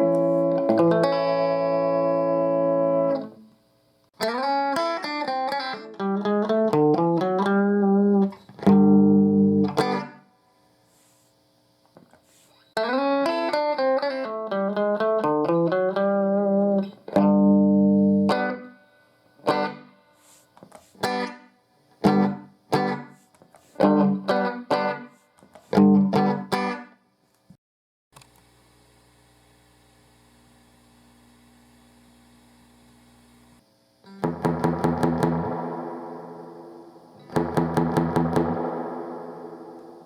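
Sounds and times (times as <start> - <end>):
electric guitar chords: 0.0 - 3.6, 4.2 - 10.3, 12.8 - 27.0, 34.0 - 40.0
amplifier hum and hiss: 0.0 - 27.5, 28.2 - 40.0.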